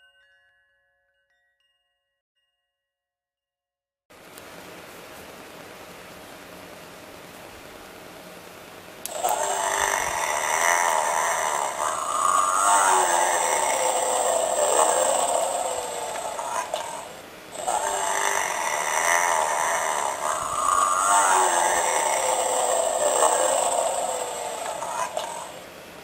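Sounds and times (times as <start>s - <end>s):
toy snoring sound: 9.1s - 25.7s.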